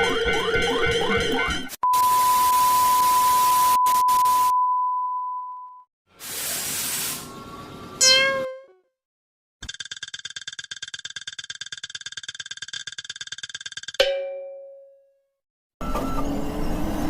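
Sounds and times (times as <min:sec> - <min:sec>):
loud burst of hiss: 0:06.2 - 0:07.3
sharp pitched tone: 0:08.0 - 0:08.8.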